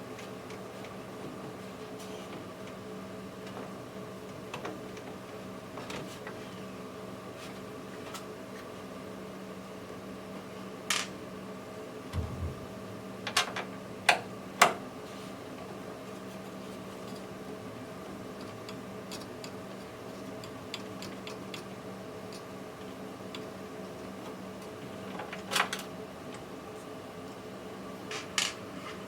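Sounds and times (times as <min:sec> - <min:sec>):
steady hum: 0:12.1 - 0:13.3
dull thumps: 0:12.2 - 0:12.8.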